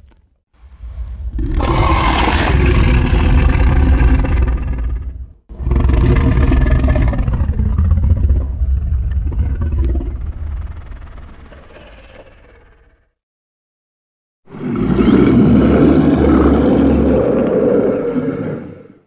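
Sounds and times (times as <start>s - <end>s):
monster roars: 1.3s - 8.6s, 14.5s - 19.0s.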